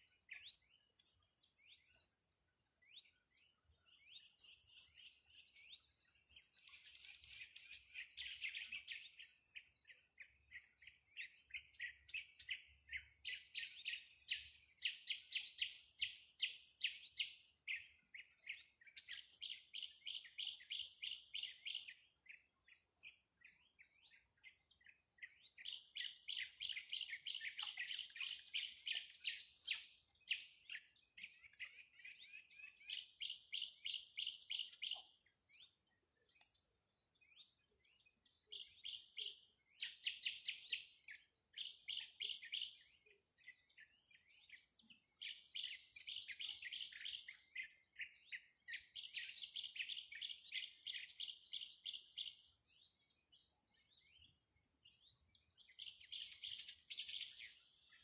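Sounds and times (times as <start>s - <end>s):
songbird chirping rapidly: 0.0s - 58.0s.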